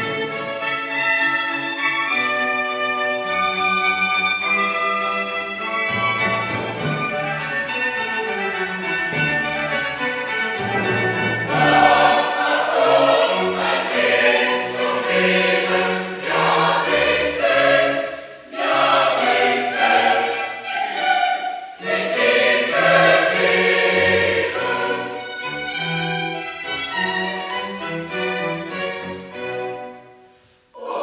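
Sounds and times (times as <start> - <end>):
choir singing: 11.4 - 25.7, 30.8 - 31.0.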